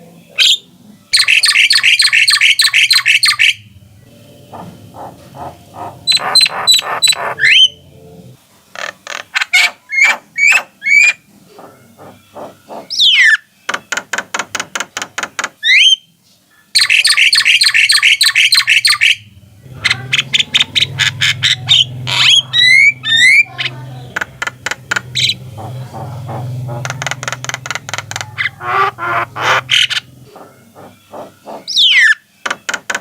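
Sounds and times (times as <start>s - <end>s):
birds chattering: 0.1s - 14.1s, 15.6s - 33.0s
birds calling and whistling: 0.4s - 8.4s, 9.4s - 13.6s, 15.6s - 32.6s
steady low hum: 3.5s - 8.4s, 19.2s - 31.8s.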